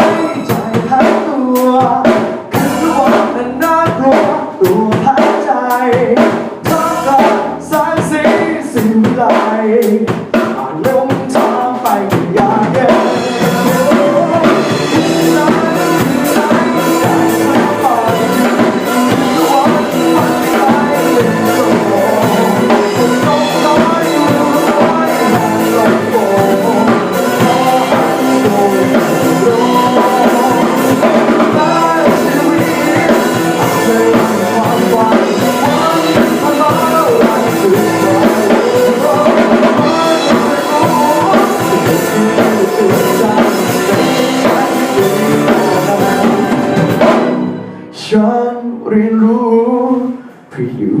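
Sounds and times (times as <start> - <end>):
band music with drum kit: 0.0 - 48.4
lead melody: 2.6 - 3.8, 12.4 - 48.0.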